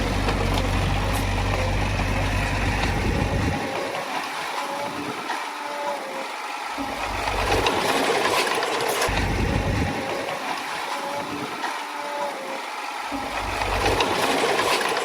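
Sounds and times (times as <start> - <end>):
bulldozer diesel engine under load: 0.0 - 4.2, 6.8 - 10.5, 13.2 - 15.0
rapid mechanical clatter: 6.8 - 10.5, 13.2 - 15.0
low rumble: 9.1 - 10.1.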